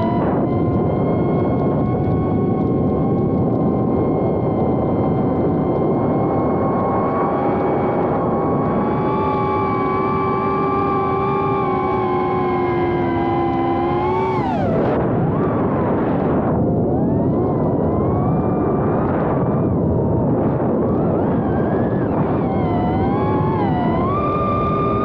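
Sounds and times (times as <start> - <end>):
quadcopter motors whining: 0.0 - 15.7, 16.3 - 25.0.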